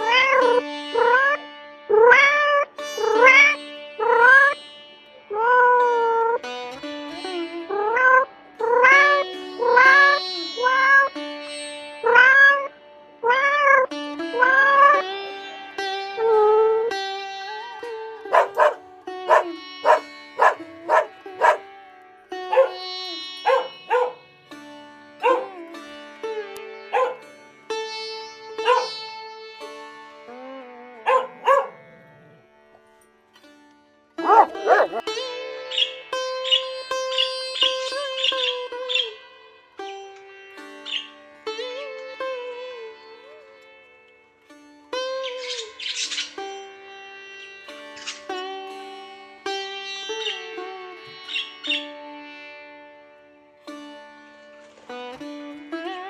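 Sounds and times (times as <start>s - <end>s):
plucked-string music: 0.0s - 56.0s
dog barking: 18.3s - 21.6s, 22.5s - 22.8s, 23.4s - 24.2s, 25.2s - 25.6s, 26.9s - 27.2s, 28.6s - 28.9s, 31.1s - 31.9s, 34.2s - 35.0s.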